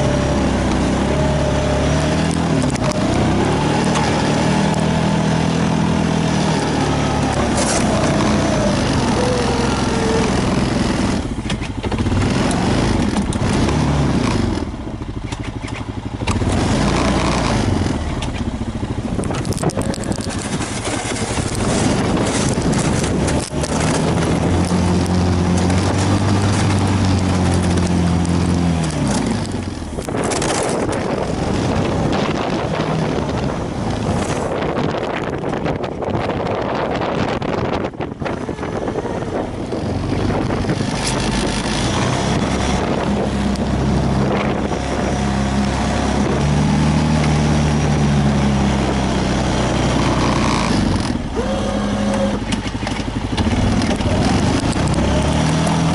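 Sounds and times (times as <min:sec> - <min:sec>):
engine revving up and down: 0:00.0 - 0:55.9
rough scraping noise: 0:01.6 - 0:11.3, 0:19.2 - 0:47.6.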